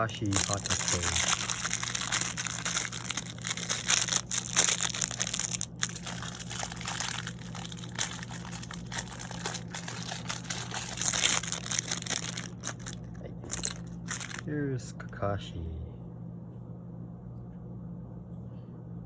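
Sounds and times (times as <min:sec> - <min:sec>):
packaging crinkling: 0:00.0 - 0:14.4.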